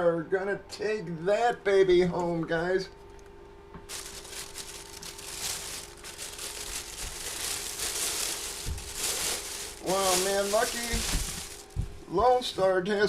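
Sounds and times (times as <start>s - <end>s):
faint steady hum: 0.0s - 13.0s
packaging rustling and crinkling: 3.9s - 12.0s.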